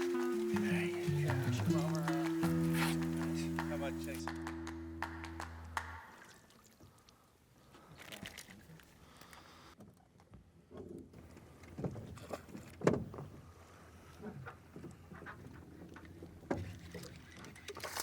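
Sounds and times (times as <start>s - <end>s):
water splashing against boat: 0.0s - 4.4s, 11.2s - 18.0s.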